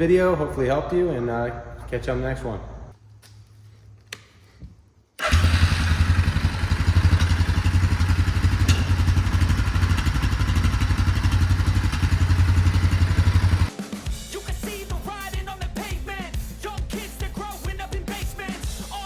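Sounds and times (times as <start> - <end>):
atv engine running: 5.2 - 13.7
music: 13.7 - 19.0.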